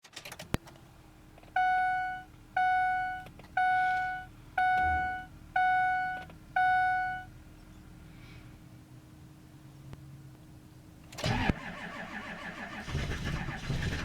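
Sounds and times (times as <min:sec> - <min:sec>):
dashboard warning chime beeping: 0:01.5 - 0:07.3.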